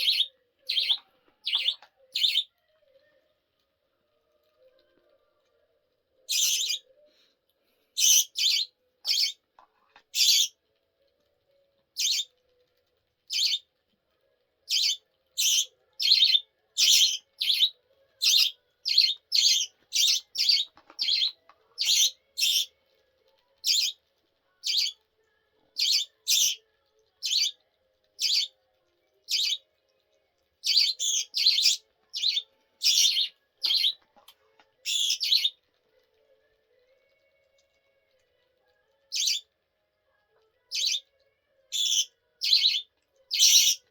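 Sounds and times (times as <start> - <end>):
budgerigar chirping: 0.0 - 2.5, 6.3 - 6.8, 8.0 - 9.4, 10.2 - 10.5, 12.0 - 12.3, 13.3 - 13.6, 14.7 - 22.7, 23.7 - 24.0, 24.6 - 25.0, 25.8 - 26.6, 27.3 - 27.6, 28.2 - 28.5, 29.3 - 29.6, 30.6 - 34.0, 34.9 - 35.5, 39.2 - 39.4, 40.8 - 41.0, 41.8 - 43.8.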